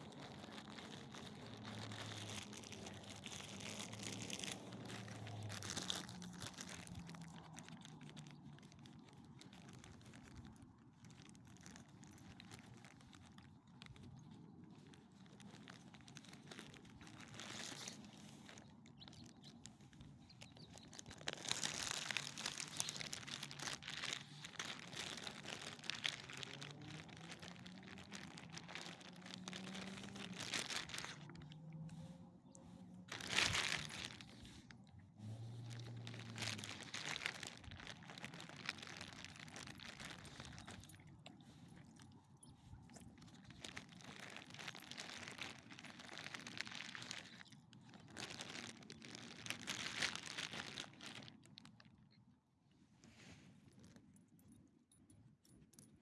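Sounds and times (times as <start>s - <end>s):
crunching footsteps on rough surface: 0.0s - 10.3s, 11.1s - 41.1s.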